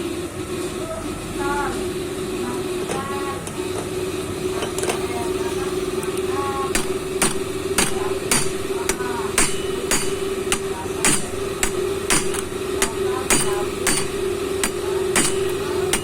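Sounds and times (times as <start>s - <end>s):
steady hum: 5.2s - 16.0s
hammer striking metal: 6.8s - 16.0s.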